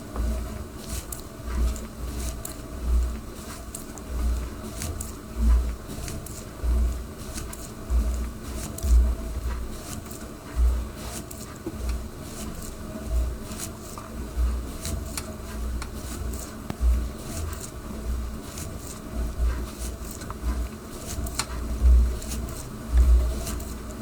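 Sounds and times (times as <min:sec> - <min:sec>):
exercise bike flywheel whirring: 0:00.0 - 0:24.0
steady low hum: 0:00.0 - 0:24.0
deep thuds: 0:16.7 - 0:17.2, 0:21.8 - 0:22.2.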